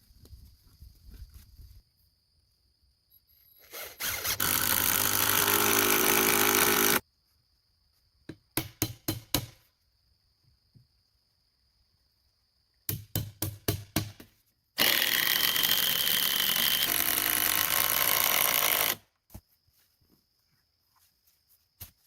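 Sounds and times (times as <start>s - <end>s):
power drill driving into wood: 3.6s - 7.0s, 14.8s - 19.0s.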